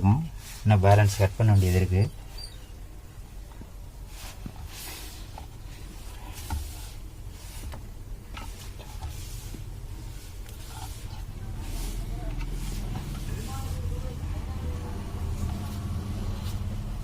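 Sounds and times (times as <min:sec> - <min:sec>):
knife scraping through dough: 0:08.4 - 0:13.8.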